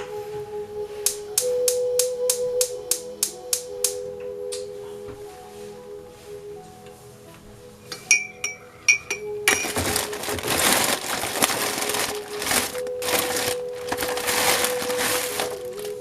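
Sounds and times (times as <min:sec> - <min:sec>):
soft music with held tones: 0:00.0 - 0:16.0
glassy metallic clinks: 0:07.9 - 0:09.7.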